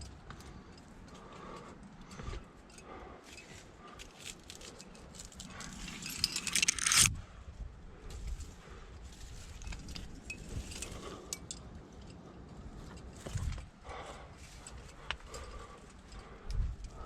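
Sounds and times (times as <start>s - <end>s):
climbing hardware jingling: 0.1s - 7.1s, 9.4s - 17.0s
rushing scrape: 5.6s - 7.2s.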